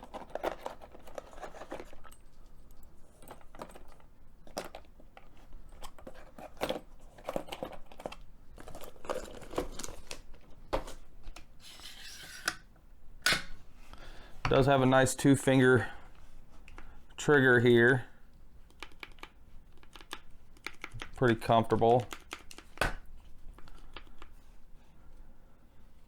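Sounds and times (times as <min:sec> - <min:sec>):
plastic and metal clicks and rattles: 0:18.7 - 0:22.9.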